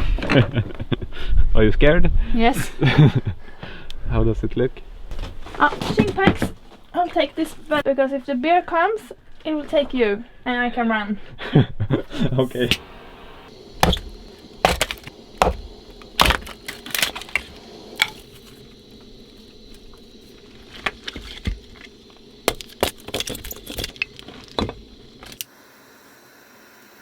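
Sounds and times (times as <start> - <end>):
steady hiss: 12.0 - 27.0
objects clattering and clinking: 22.5 - 25.4.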